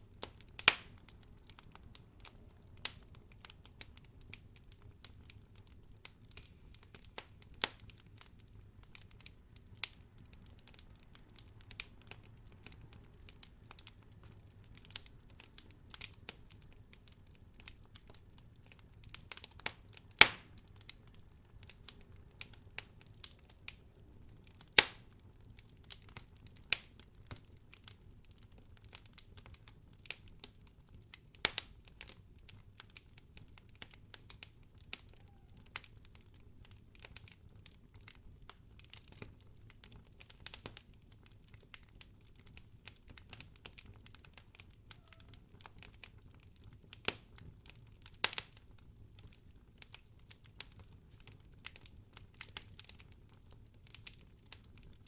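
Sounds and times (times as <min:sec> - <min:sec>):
campfire crackling and popping: 0:00.0 - 0:55.0.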